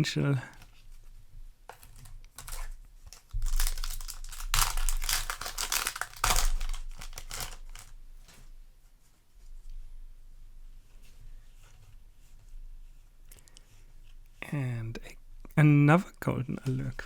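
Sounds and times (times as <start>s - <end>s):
foil wrapper crinkling and tearing: 1.7s - 8.0s.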